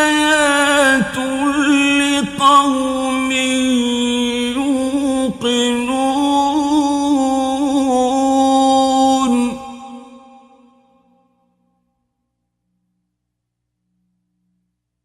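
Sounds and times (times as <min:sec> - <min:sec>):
man reciting melodically: 0:00.0 - 0:10.6.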